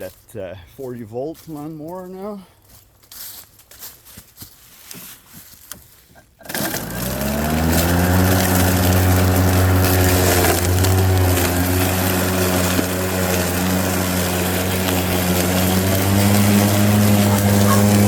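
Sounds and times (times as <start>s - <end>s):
lawn mower motor hum: 6.4s - 18.0s.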